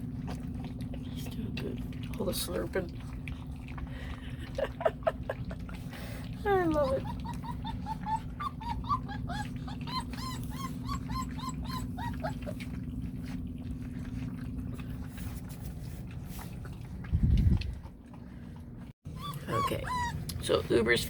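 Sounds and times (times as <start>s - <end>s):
dog whining: 6.7s - 12.8s, 19.1s - 20.5s
steady low rumble: 11.7s - 18.9s.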